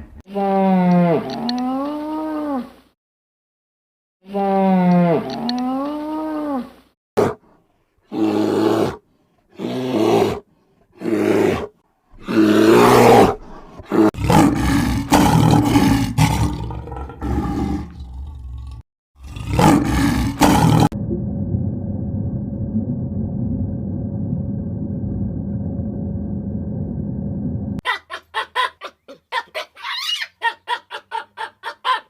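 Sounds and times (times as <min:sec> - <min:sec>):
big cat roaring and growling: 0:11.0 - 0:21.0.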